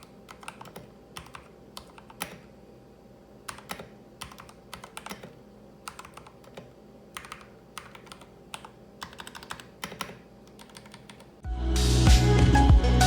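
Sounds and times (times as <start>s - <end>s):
loud music: 11.4s - 13.0s.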